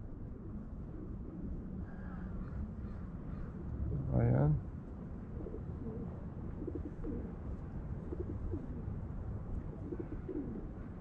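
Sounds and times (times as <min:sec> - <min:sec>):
pigeons cooing: 0:05.4 - 0:07.4, 0:09.7 - 0:10.8.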